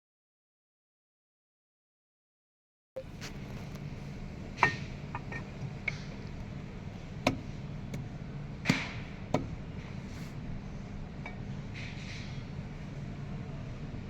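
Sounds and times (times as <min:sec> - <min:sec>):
steady low hum: 0:03.0 - 0:14.0
tools knocking on metal engine: 0:04.6 - 0:06.5.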